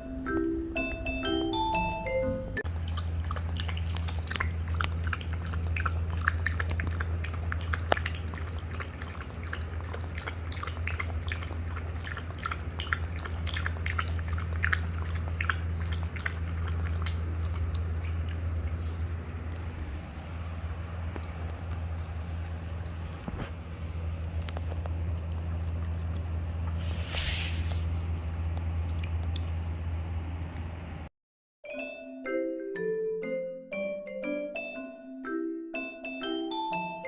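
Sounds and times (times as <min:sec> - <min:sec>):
steady low hum: 0:00.0 - 0:31.1
dog chewing: 0:02.6 - 0:27.0.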